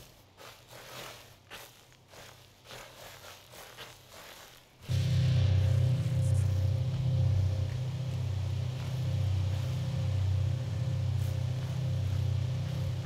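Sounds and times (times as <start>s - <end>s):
low pulsing drone: 4.8s - 13.0s
faint high steady tone: 4.9s - 13.0s.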